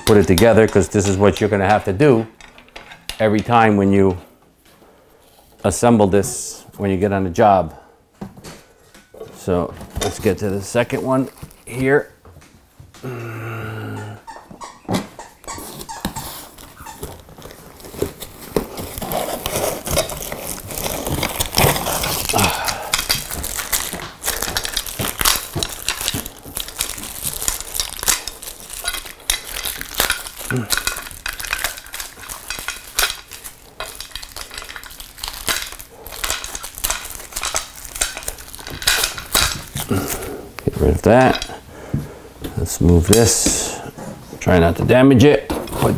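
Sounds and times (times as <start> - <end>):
metal and plastic parts clinking: 0.0 - 3.7, 19.2 - 39.9.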